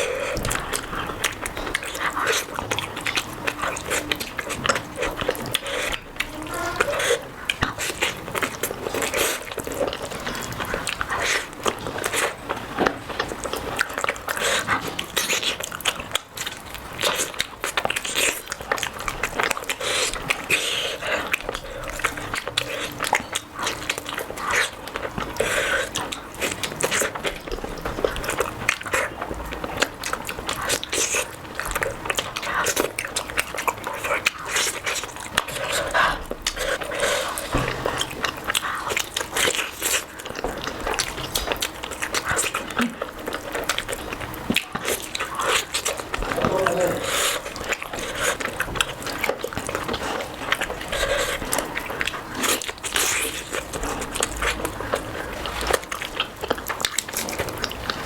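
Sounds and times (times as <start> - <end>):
wet chewing: 0.0 - 58.0
mouth smacks: 32.1 - 58.0.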